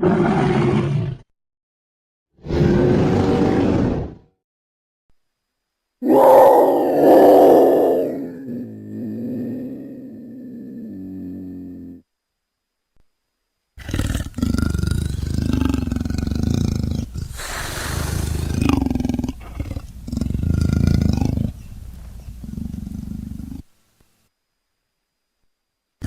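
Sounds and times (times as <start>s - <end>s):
deep creature roars and growls: 0.0s - 1.2s, 6.0s - 12.0s.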